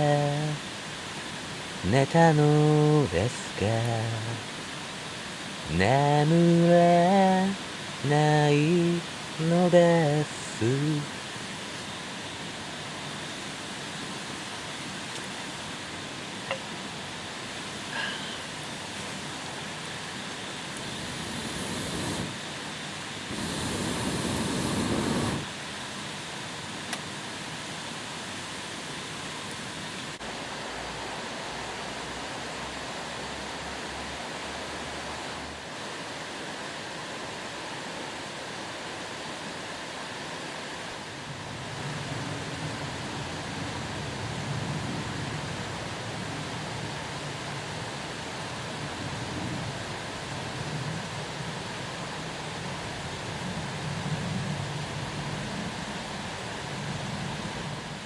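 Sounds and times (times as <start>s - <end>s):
steady outdoor rushing noise: 0.0s - 58.0s.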